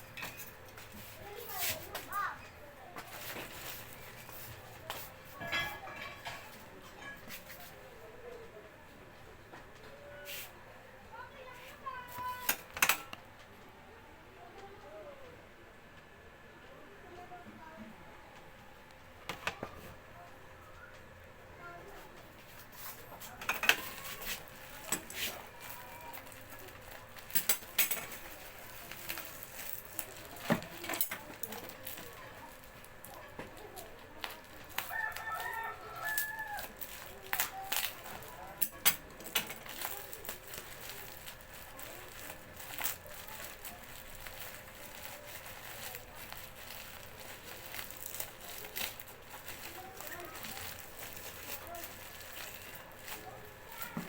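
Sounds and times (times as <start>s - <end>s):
metal tools clinking: 0.0s - 1.0s, 3.1s - 7.7s, 22.8s - 32.6s, 33.8s - 54.0s
packaging crinkling and rustling: 3.0s - 6.5s, 11.4s - 13.2s, 22.4s - 54.0s.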